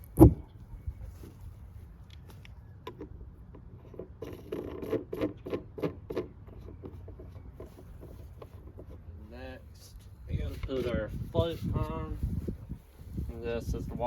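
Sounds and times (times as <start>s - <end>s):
nut rubbing and scraping: 2.9s - 9.1s.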